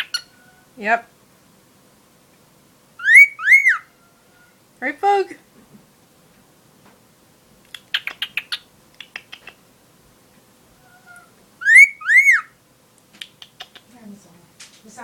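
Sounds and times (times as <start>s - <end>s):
bird chirping: 0.0s - 0.8s, 3.0s - 4.6s, 7.7s - 9.7s, 10.8s - 14.0s
loud bird whistles: 3.0s - 3.9s, 10.9s - 12.6s.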